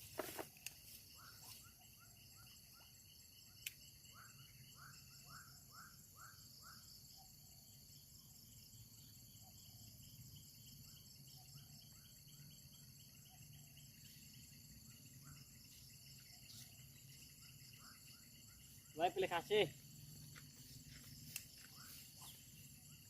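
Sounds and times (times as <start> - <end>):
crickets trilling: 0.0 - 23.0
insect chirps: 0.0 - 23.0.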